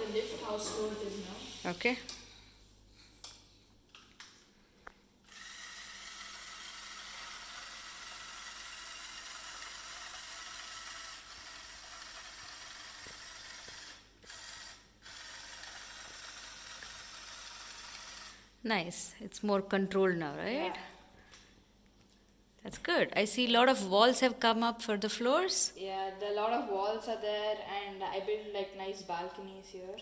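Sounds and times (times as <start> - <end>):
electric motor whirring: 5.3 - 18.5.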